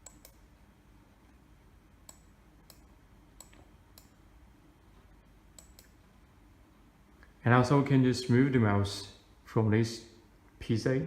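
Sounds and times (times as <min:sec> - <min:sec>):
mouse buttons clicking: 0:00.0 - 0:00.4, 0:02.0 - 0:04.2, 0:05.5 - 0:06.0
faint steady hum: 0:00.0 - 0:11.0.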